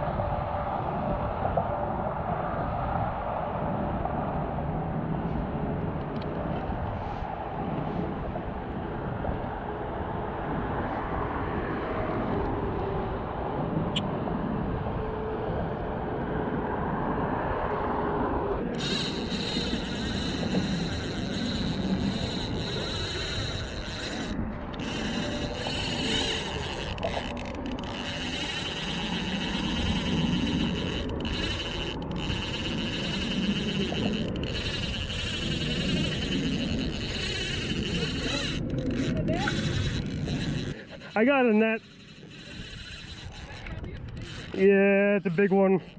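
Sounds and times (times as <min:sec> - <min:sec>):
road traffic noise: 0:17.4 - 0:45.9.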